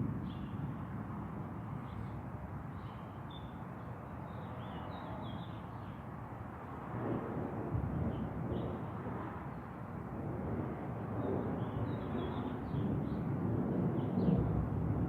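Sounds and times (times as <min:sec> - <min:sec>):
low rumble of thunder: 0:06.8 - 0:15.0.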